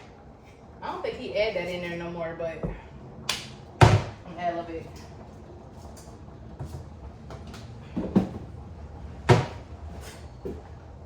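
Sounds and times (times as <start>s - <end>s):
kitchen knocks: 3.8s - 4.2s, 9.3s - 9.6s.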